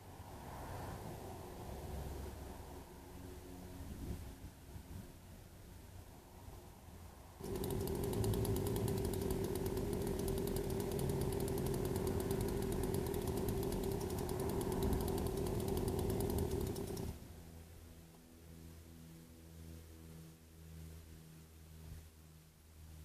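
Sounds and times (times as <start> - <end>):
chainsaw revving and idling: 7.4 - 17.2.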